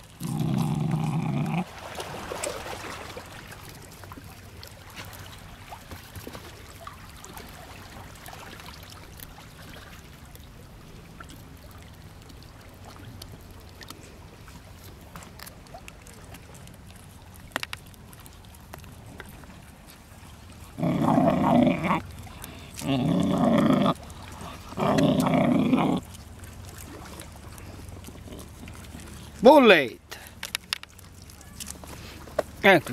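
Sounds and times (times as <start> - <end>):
puppy belching loudly: 0.2 - 1.7, 20.7 - 22.1, 22.8 - 24.0, 24.7 - 26.1.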